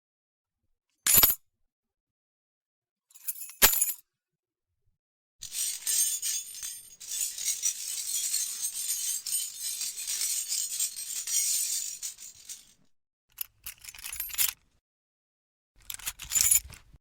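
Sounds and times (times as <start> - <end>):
keys jangling: 5.4 - 12.8, 13.4 - 14.6, 15.8 - 16.9.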